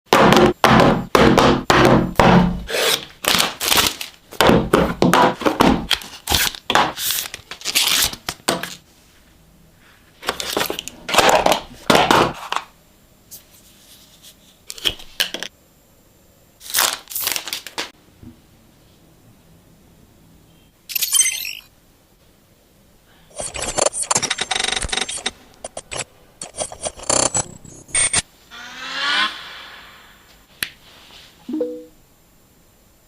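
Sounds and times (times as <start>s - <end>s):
packaging tearing and crinkling: 2.8s - 4.2s, 5.9s - 8.8s, 16.6s - 17.9s.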